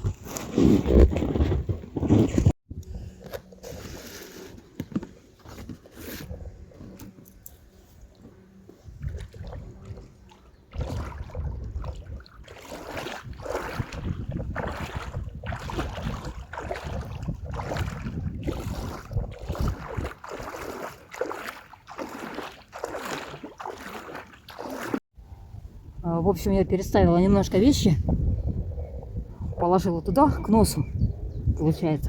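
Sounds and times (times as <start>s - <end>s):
water splashing around boat: 3.1s - 25.0s
wind buffeting microphone: 6.1s - 7.1s, 8.8s - 20.8s, 25.2s - 32.0s.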